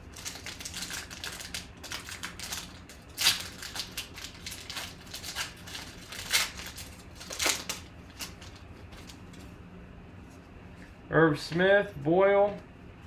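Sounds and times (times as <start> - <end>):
trading cards clicking and rustling: 0.1 - 9.5.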